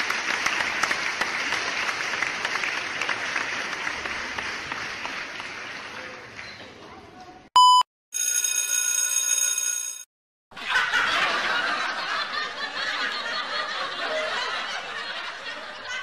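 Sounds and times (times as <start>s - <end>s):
short high-pitched beep: 7.6s - 8.3s
crowd laughter: 10.5s - 16.0s.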